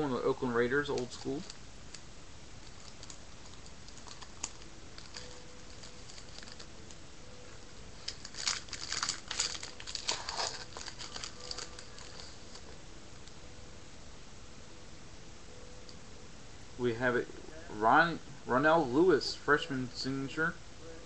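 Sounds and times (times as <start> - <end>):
wrapper crinkling and tearing: 0.8 - 2.0, 2.6 - 6.9, 8.0 - 13.3.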